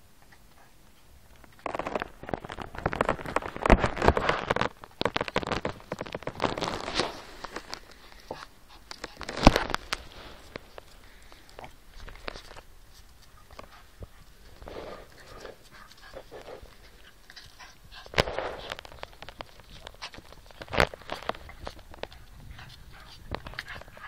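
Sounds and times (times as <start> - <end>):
dogs play-fighting scuffle: 11.6 - 24.0.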